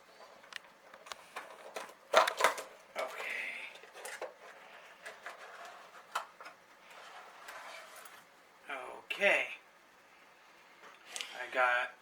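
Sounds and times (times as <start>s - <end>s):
plastic packaging rustling: 0.0s - 8.2s
plastic figures clicking and clattering: 0.4s - 6.6s.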